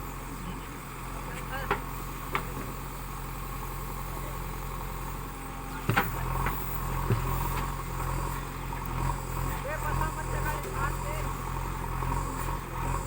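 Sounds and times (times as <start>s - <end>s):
diesel engine running: 0.0s - 13.0s
sharp knocks: 5.8s - 7.7s.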